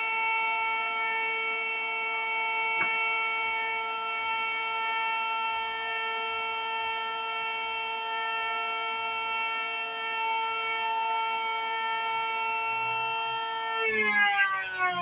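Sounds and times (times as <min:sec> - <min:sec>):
jointer high-pitched whine: 0:10.3 - 0:15.0.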